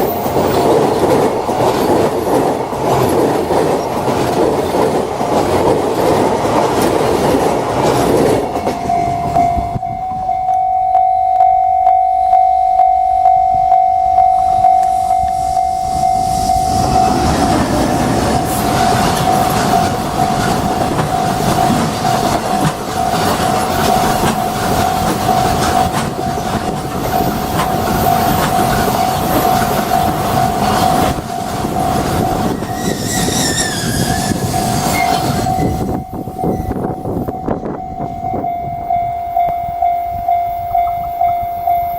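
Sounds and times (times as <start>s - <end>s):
crossing warning alarm: 0.0s - 5.3s, 5.9s - 41.9s
train wagons rumbling on rails: 0.0s - 11.2s, 14.4s - 41.9s
brief high tone: 8.4s - 17.5s.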